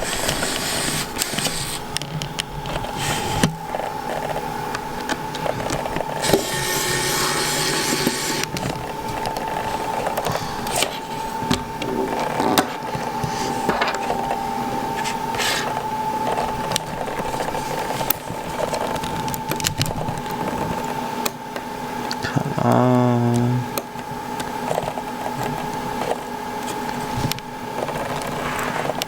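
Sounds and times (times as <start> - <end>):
hand tools clicking and scraping: 0.0 - 21.4
steady high-pitched hum: 0.0 - 29.0.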